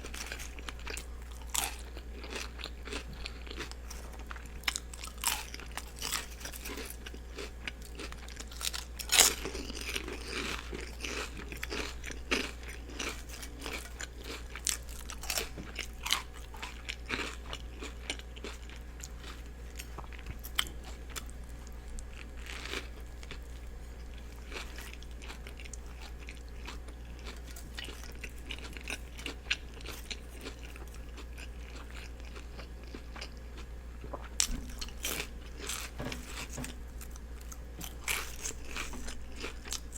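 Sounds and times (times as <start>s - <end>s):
biting and chewing sandwich: 0.0s - 39.9s
steady low hum: 0.0s - 39.9s.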